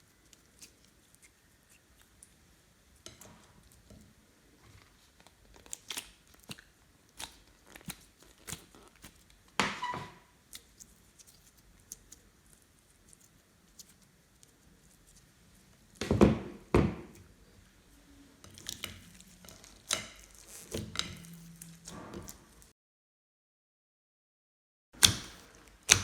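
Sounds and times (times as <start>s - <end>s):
slime squelch: 0.0s - 3.9s, 4.9s - 9.4s, 10.4s - 16.0s.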